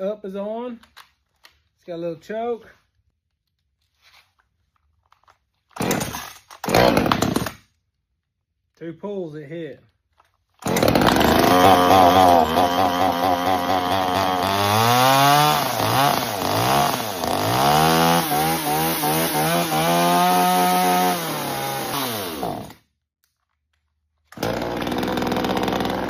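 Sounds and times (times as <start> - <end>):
chainsaw revving: 5.8 - 7.6, 10.6 - 22.8, 24.3 - 26.0.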